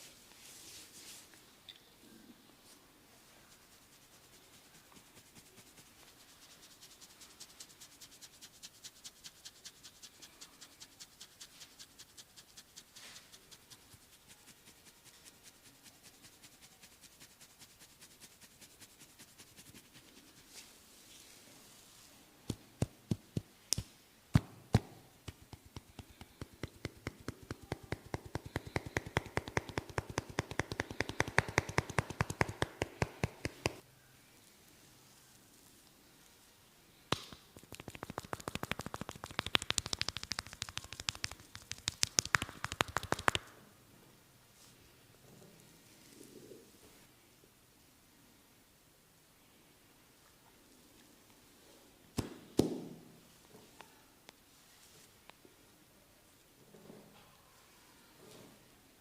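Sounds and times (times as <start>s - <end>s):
hands tapping and slapping on body: 22.5s - 33.8s, 37.1s - 43.5s, 52.2s - 52.9s.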